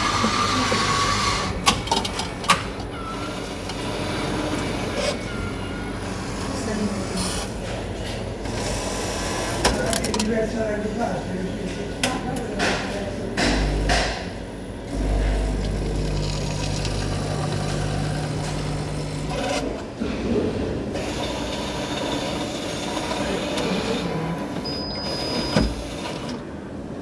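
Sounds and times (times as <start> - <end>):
coffee dispensing hiss and rattle: 0.0 - 2.6, 12.6 - 26.5
vending machine motor humming: 0.0 - 27.0.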